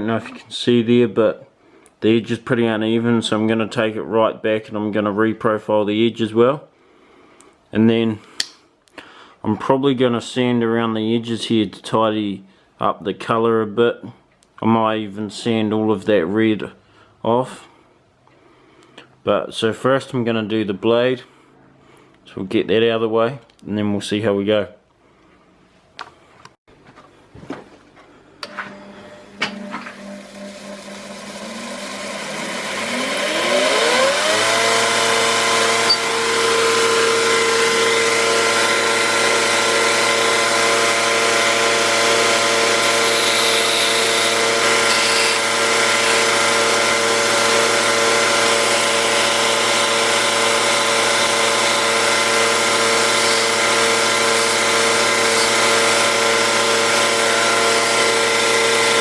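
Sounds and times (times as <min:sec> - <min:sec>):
electric grinder motor spinning: 0:28.5 - 0:59.0.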